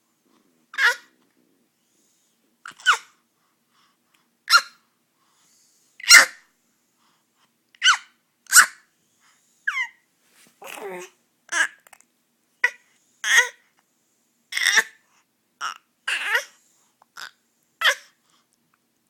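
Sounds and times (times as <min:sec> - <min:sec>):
baby squealing: 0:07.8 - 0:08.8.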